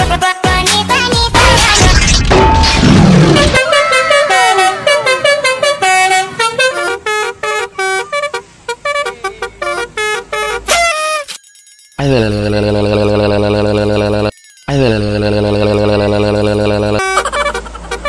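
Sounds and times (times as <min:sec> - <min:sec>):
loud music: 0:00.0 - 0:05.5
musical bus horn playing tune: 0:03.2 - 0:11.3, 0:14.9 - 0:18.0.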